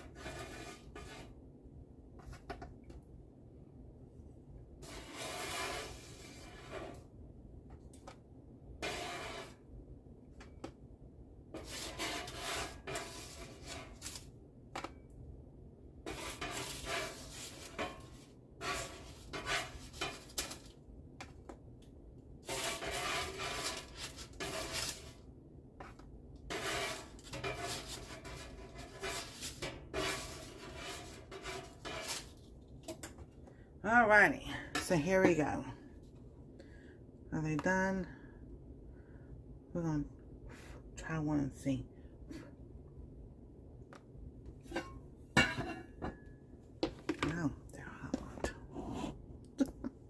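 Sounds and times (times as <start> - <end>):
spatula scraping cookie sheet: 0.0 - 1.4, 4.8 - 7.1, 8.8 - 9.7, 11.5 - 14.9, 16.0 - 20.7, 22.4 - 33.1, 48.8 - 49.2.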